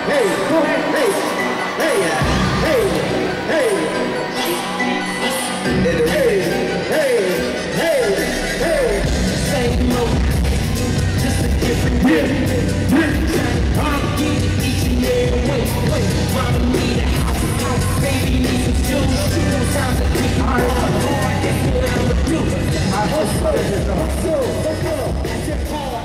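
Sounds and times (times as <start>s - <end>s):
loud hip-hop music: 0.0s - 26.0s.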